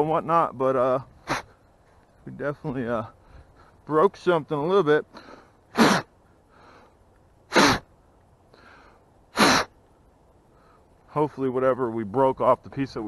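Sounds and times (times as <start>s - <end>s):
man breathing hard: 5.1s - 5.8s, 6.4s - 7.0s, 8.5s - 9.7s.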